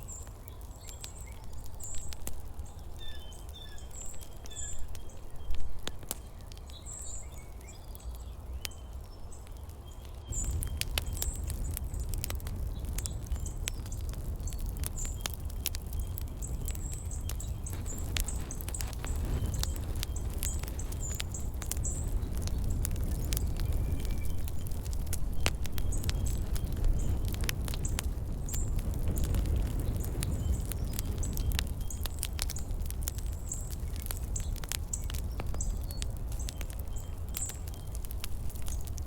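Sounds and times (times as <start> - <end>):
birds chirping: 2.8 - 39.0
steady low rumble: 10.3 - 39.0.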